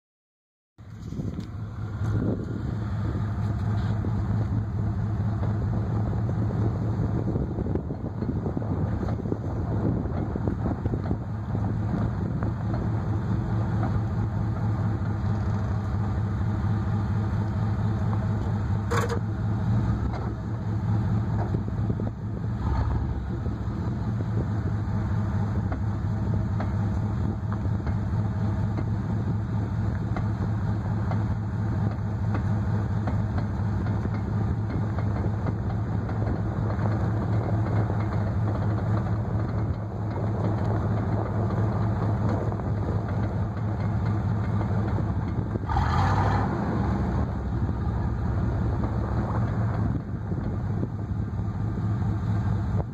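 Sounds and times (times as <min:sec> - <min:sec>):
pickup truck engine humming: 0:00.8 - 0:52.9.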